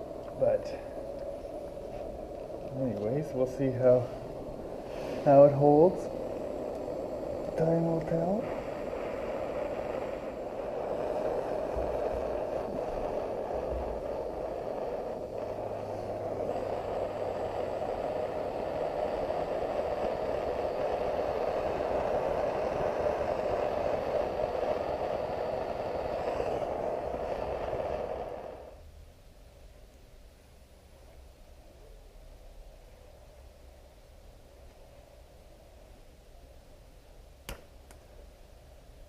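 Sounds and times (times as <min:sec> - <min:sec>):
torch flame hissing: 0:00.0 - 0:28.8.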